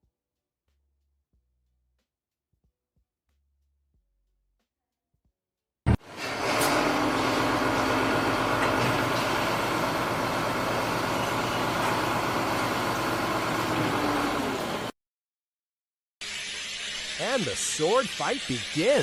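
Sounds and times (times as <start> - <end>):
engine running: 5.9 - 14.9.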